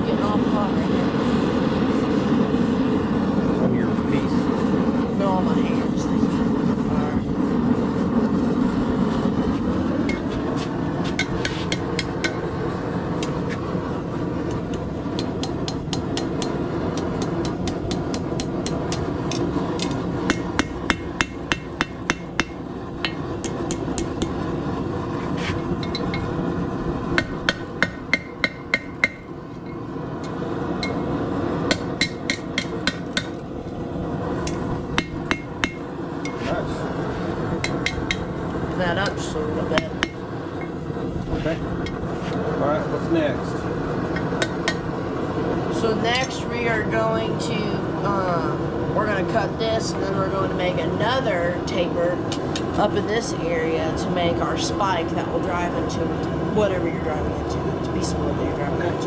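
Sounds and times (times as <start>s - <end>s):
steady rushing noise: 0.0s - 59.0s
hammer striking steel on anvil: 11.2s - 12.4s, 15.2s - 24.3s, 27.2s - 29.8s, 31.7s - 33.4s, 37.6s - 38.3s.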